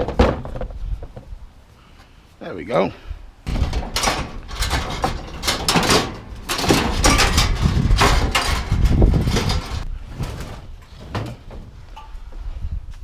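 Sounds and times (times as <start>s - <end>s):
scrap metal scraping and rattling: 3.5s - 11.8s.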